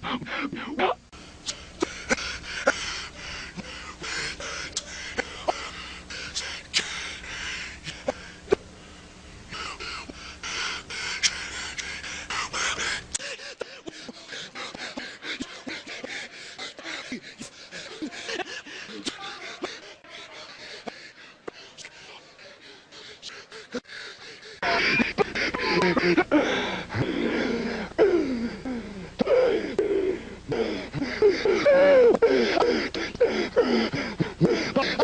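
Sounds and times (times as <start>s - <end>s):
breathy gasps: 9.5s - 35.0s.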